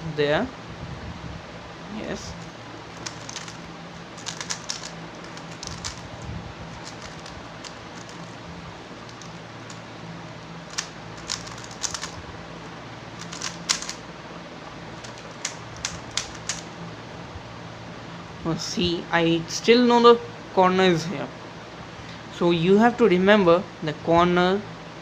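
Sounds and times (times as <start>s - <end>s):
steady low hum: 0.0s - 25.0s
plastic puzzle cube clicks: 3.0s - 3.6s, 4.2s - 6.0s, 6.8s - 8.3s, 10.7s - 12.2s, 13.2s - 14.0s, 15.0s - 16.6s.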